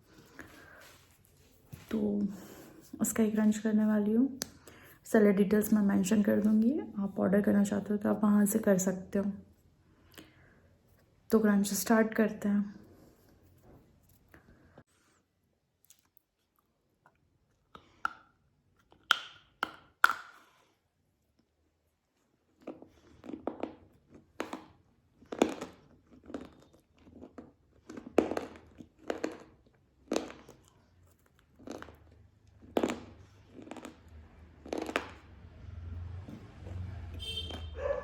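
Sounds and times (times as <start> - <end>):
chocolate bar snapping and crunching: 17.7 - 20.5, 22.6 - 35.3.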